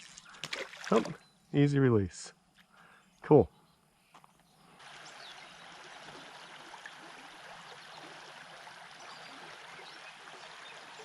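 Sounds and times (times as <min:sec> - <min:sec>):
creek water babbling: 0:00.0 - 0:01.3, 0:04.5 - 0:11.0.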